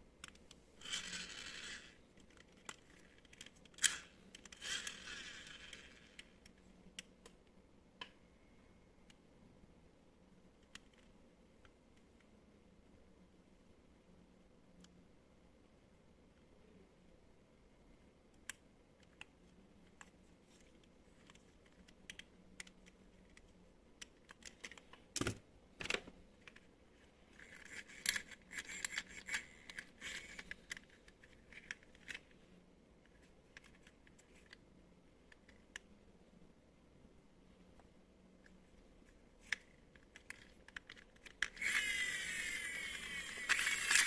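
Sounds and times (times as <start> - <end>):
plastic parts clicking and tapping: 39.4 - 44.0.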